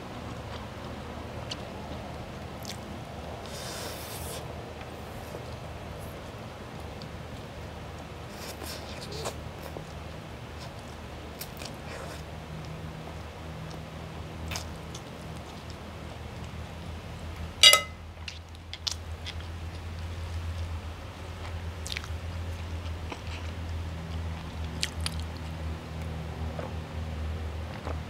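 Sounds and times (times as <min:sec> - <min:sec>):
person chewing food: 0:02.6 - 0:02.8, 0:21.8 - 0:25.5
steady low hum: 0:09.4 - 0:18.3
short loud ringing: 0:17.6 - 0:18.0.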